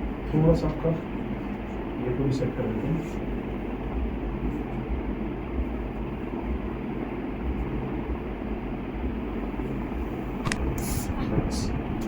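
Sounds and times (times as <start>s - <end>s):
low hum: 0.0s - 12.0s
sharp click: 10.4s - 10.9s.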